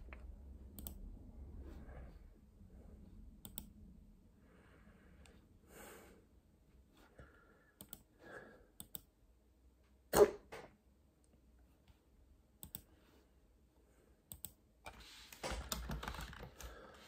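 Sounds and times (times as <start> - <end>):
soft breathing: 4.2 - 8.8, 16.5 - 17.0.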